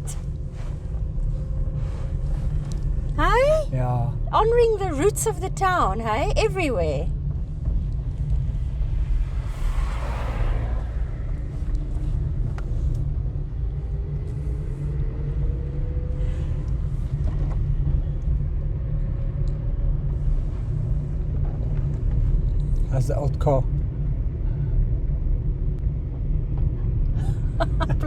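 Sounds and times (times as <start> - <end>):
car engine and road rumble: 0.0 - 28.0
faint rising whine: 7.2 - 16.8
brief whoosh: 8.4 - 13.2.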